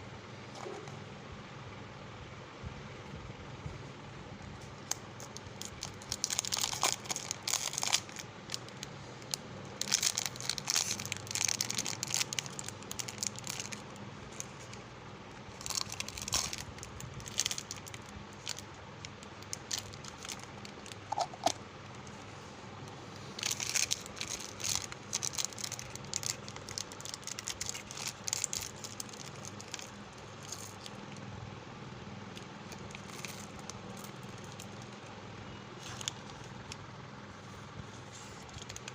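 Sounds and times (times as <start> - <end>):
faint steady hum: 0.0 - 38.9
plastic wrappers crinkling: 4.8 - 22.2, 23.2 - 31.2, 32.4 - 35.1, 35.8 - 36.8, 38.0 - 38.9.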